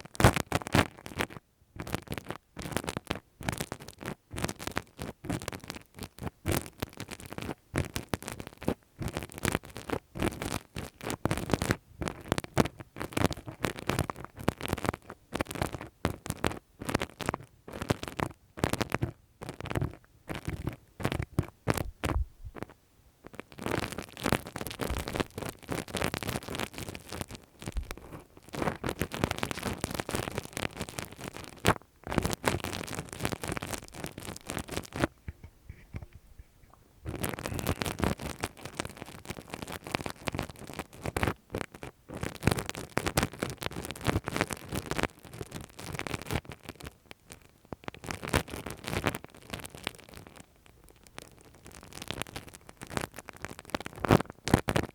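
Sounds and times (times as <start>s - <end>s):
tool scratching on microphone: 34.5s - 38.2s.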